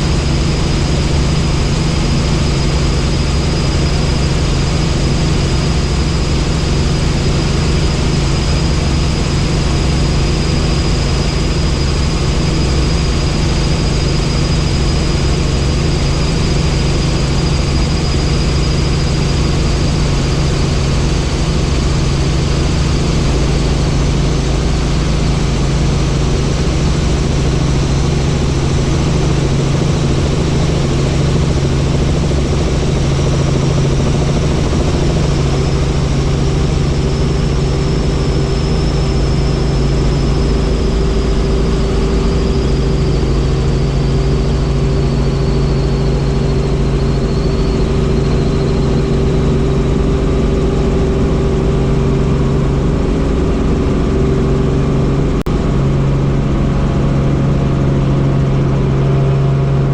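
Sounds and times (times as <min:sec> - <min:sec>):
faint high whine falling in pitch: 0:00.0 - 0:59.9
helicopter engine and rotor: 0:00.0 - 0:59.9.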